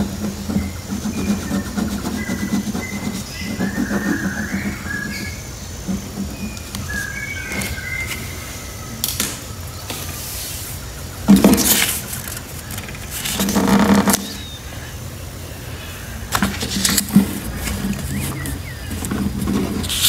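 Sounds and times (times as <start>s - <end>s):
steady low hum: 0.0s - 20.0s
paper rustling and crinkling: 11.3s - 14.4s.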